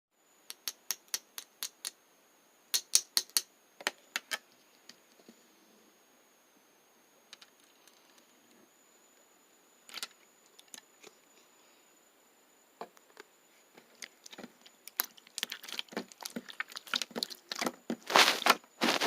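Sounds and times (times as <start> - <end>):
slime clicking and popping: 14.2 - 17.7.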